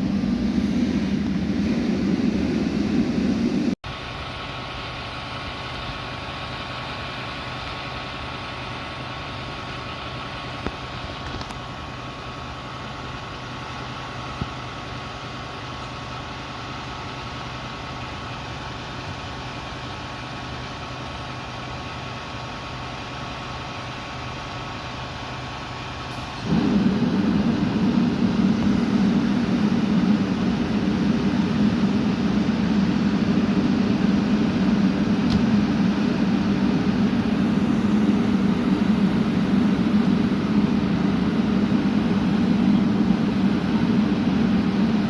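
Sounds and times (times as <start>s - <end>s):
fire engine idling with high whine: 0.0s - 45.0s.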